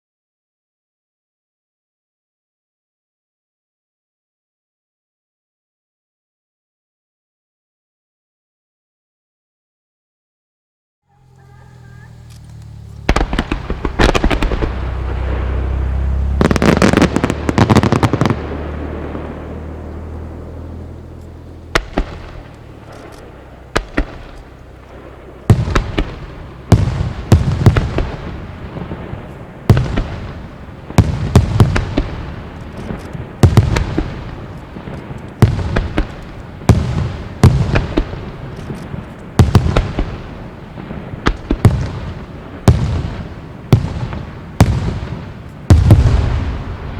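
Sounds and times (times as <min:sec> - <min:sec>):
fireworks bursting: 0:11.1 - 0:46.9
fireworks crackling: 0:11.1 - 0:46.9
low rolling rumble: 0:11.1 - 0:46.9.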